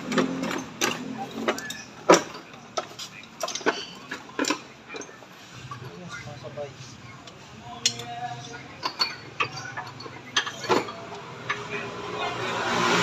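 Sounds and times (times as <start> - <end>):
hand tools clinking on metal: 0.0 - 6.1, 7.7 - 11.8.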